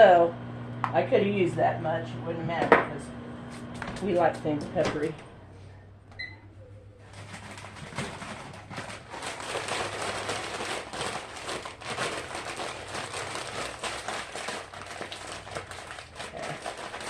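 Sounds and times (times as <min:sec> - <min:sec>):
plastic bag crinkling: 0:07.0 - 0:17.0.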